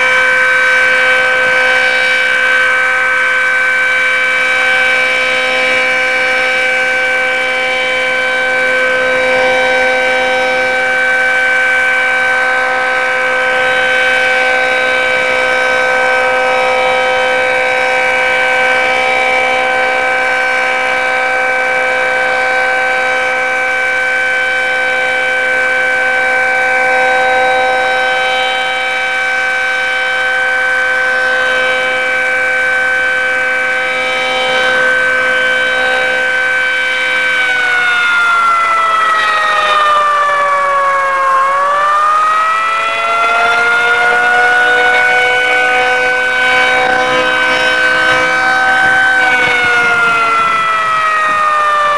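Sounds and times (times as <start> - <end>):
distant dual-tone siren: 0.0 - 51.9.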